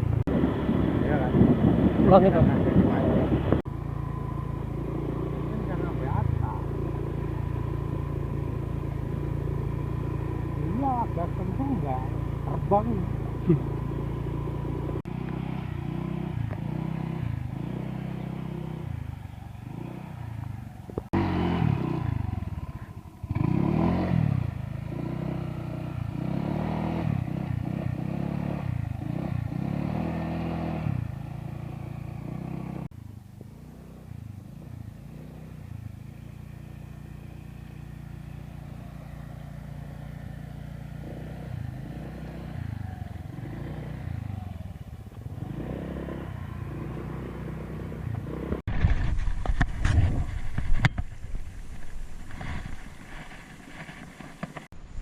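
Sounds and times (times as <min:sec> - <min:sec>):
motorcycle engine revving: 0:00.0 - 0:55.0.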